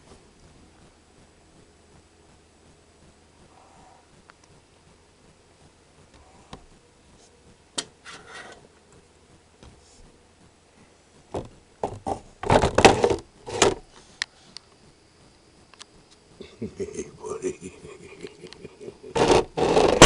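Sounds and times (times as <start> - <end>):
rubbing scrapes on wood: 8.0 - 8.7, 19.1 - 20.0.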